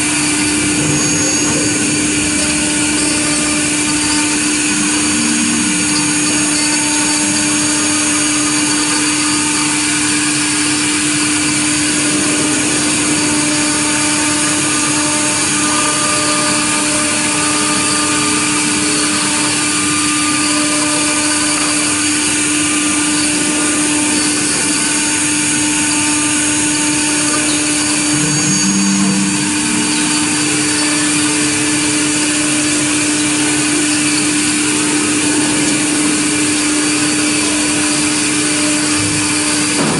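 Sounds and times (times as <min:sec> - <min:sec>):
router spindle milling metal: 0:00.0 - 0:39.9
short lower tone: 0:00.8 - 0:08.1, 0:27.3 - 0:32.1.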